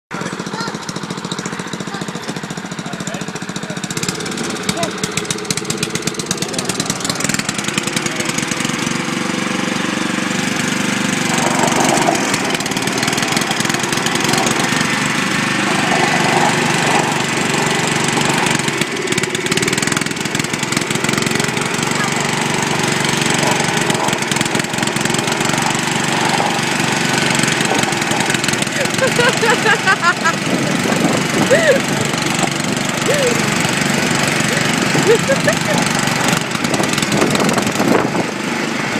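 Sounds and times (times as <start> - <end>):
small lawn tractor engines running: 0.1 - 38.9.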